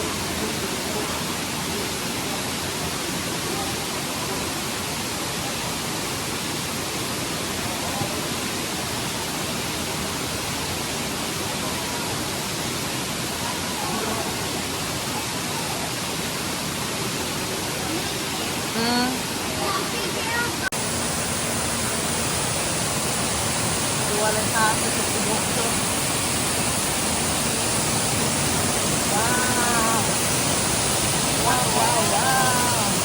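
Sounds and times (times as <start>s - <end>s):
waterfall rushing: 0.0s - 33.0s
faint voices: 17.6s - 33.0s.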